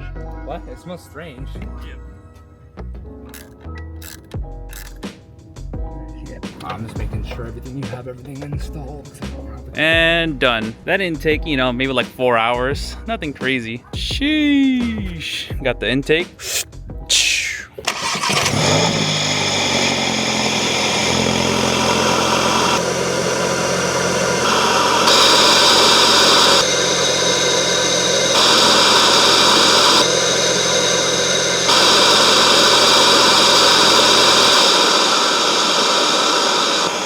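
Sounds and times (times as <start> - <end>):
loud intake hiss: 17.3 - 37.0
car engine hum: 17.8 - 37.0.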